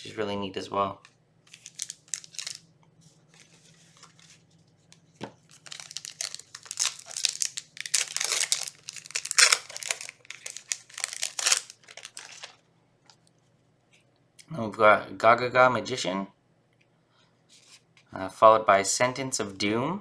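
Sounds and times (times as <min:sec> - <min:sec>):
foil wrapper crinkling and tearing: 0:01.5 - 0:02.6, 0:05.5 - 0:12.6.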